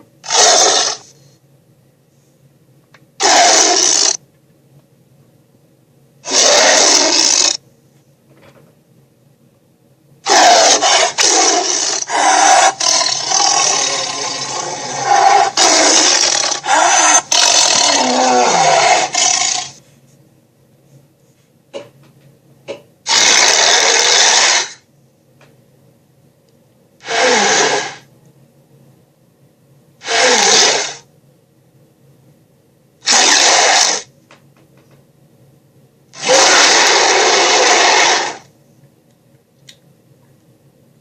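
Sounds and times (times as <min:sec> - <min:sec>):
faint low hum: 0:00.0 - 0:03.4, 0:04.2 - 0:06.6, 0:07.6 - 0:23.1, 0:24.8 - 0:27.4, 0:28.0 - 0:30.4, 0:31.0 - 0:33.1, 0:34.0 - 0:41.0
monster roaring: 0:00.2 - 0:01.0, 0:03.2 - 0:04.2, 0:06.3 - 0:07.6, 0:10.3 - 0:19.8, 0:23.1 - 0:24.8, 0:27.0 - 0:28.0, 0:30.0 - 0:31.0, 0:33.0 - 0:34.1, 0:36.2 - 0:38.4.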